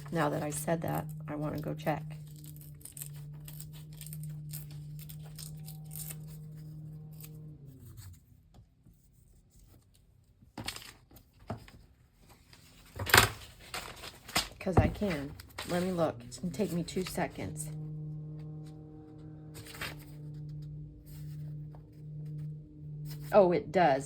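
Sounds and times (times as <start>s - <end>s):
steady low hum: 0.0s - 9.8s, 13.4s - 24.0s
paper pages rustling: 9.6s - 17.1s, 19.5s - 22.0s.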